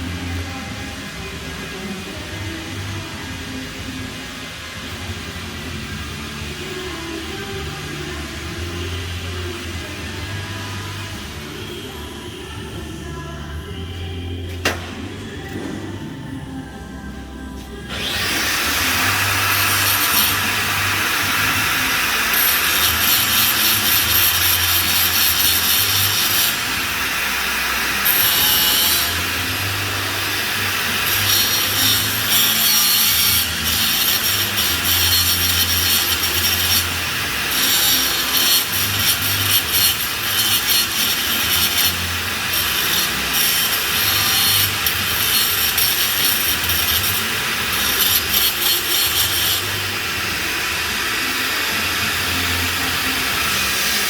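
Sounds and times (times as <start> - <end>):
welding arc crackling and hissing: 17.8 - 54.0.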